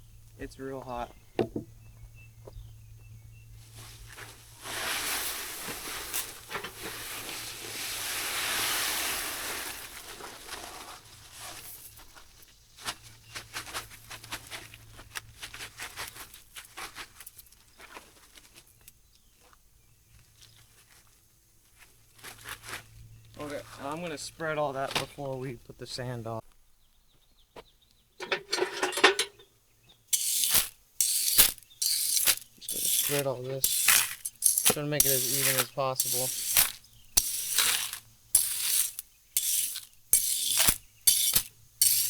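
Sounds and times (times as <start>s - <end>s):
gravel pouring rattle: 3.8s - 11.8s, 30.1s - 42.0s
stones clicking: 30.2s - 42.0s.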